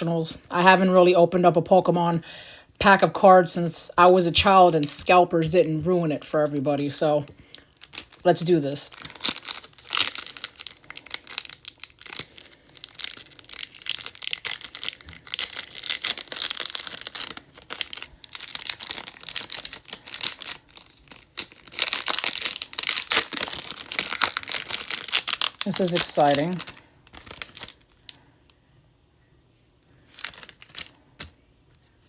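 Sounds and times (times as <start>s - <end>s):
plastic wrapper tearing and crinkling: 6.1s - 28.2s, 30.0s - 31.4s.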